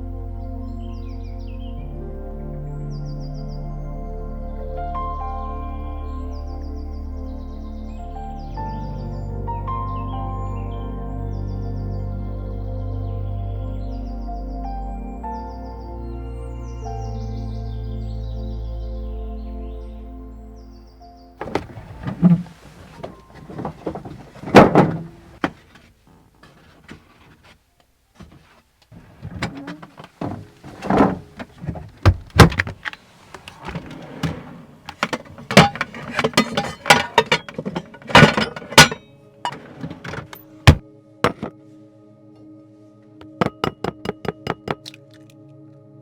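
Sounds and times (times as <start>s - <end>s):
cookware and utensils clattering: 21.4s - 25.5s, 33.6s - 41.5s
loud thuds: 21.4s - 25.8s, 29.0s - 41.6s.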